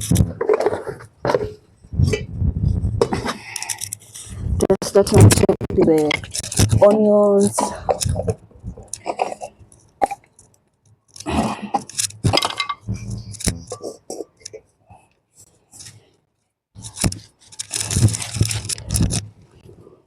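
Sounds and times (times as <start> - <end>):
dishes and utensils clinking: 12.3 - 12.9
rustling: 16.8 - 19.9.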